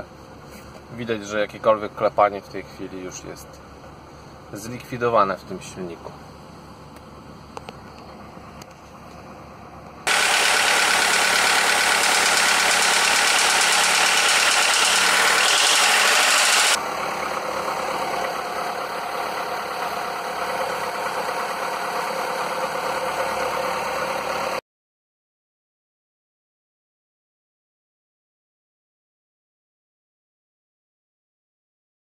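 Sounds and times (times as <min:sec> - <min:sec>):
car engine idling: 0:06.0 - 0:24.6.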